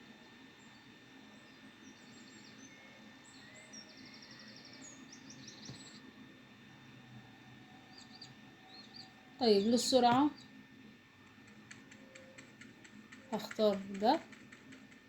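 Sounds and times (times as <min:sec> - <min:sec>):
birdsong chirps and trills: 0:00.1 - 0:15.0.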